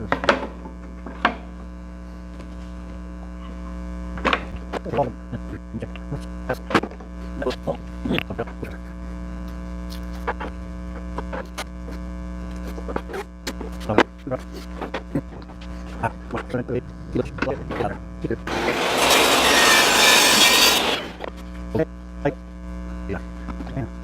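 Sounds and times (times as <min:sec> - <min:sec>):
electrical hum: 0:16.2 - 0:21.3.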